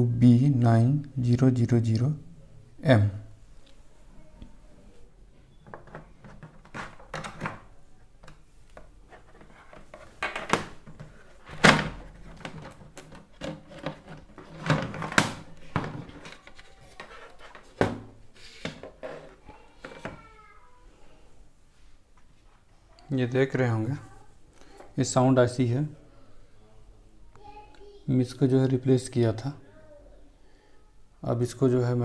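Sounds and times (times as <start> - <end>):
hard objects knocking and thudding: 5.6 - 20.2.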